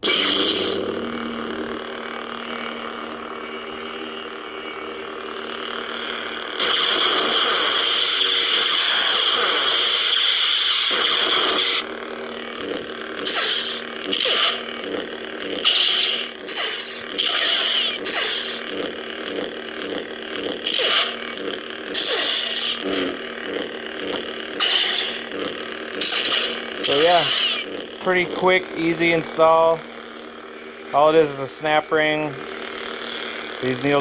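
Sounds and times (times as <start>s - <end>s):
lightsaber surges: 0.0s - 3.0s, 5.2s - 11.8s, 13.2s - 14.7s, 15.6s - 18.8s, 20.6s - 23.2s, 24.0s - 29.6s
lightsaber ignition: 0.0s - 29.9s
lightsaber hum: 0.0s - 34.0s.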